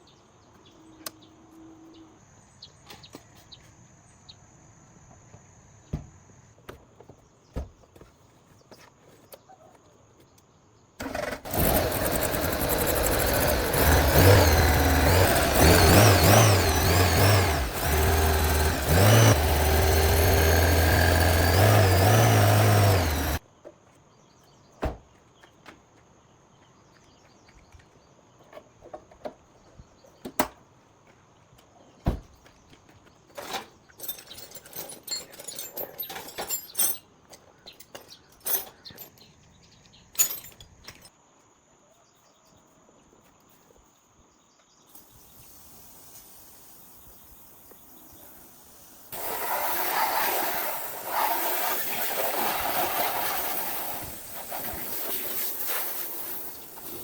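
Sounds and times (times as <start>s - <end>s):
car engine revving: 11.5s - 23.4s.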